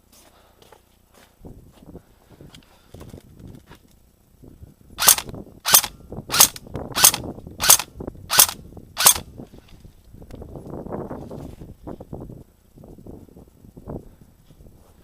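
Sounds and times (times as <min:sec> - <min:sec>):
airsoft gun firing: 0:05.0 - 0:09.2.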